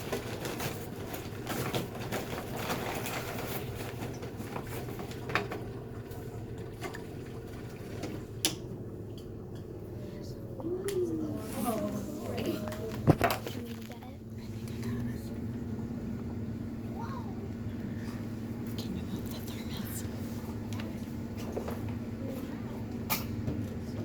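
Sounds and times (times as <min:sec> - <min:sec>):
small electric fan humming: 0:00.0 - 0:24.0.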